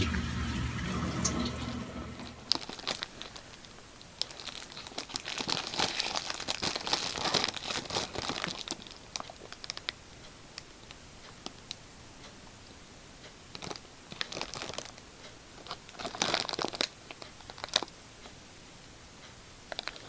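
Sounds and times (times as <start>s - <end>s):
snack wrapper crinkling and tearing: 4.2s - 9.9s, 15.6s - 17.9s.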